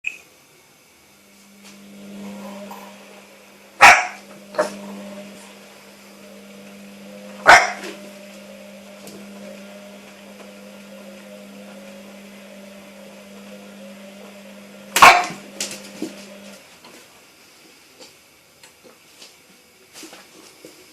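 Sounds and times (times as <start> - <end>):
washing machine humming: 0.6 - 17.8
puppy yapping: 3.8 - 4.2
puppy barking: 3.8 - 4.7, 7.4 - 7.8, 15.0 - 15.4.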